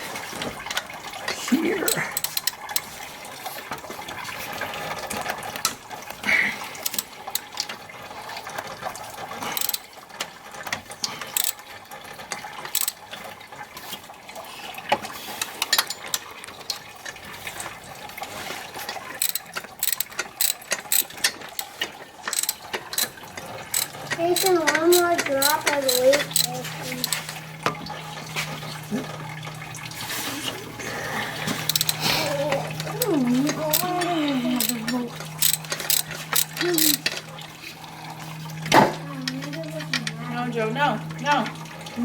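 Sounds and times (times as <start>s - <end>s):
ratchet wrench clicking: 1.9s - 2.9s, 6.8s - 7.5s, 9.6s - 9.8s, 11.4s - 11.6s, 12.7s - 13.0s, 19.2s - 27.3s, 31.7s - 32.0s, 33.7s - 34.0s, 34.6s - 37.2s.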